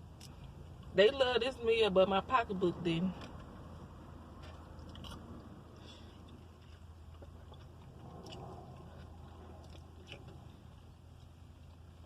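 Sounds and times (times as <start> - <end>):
person chewing food: 4.3 - 12.0.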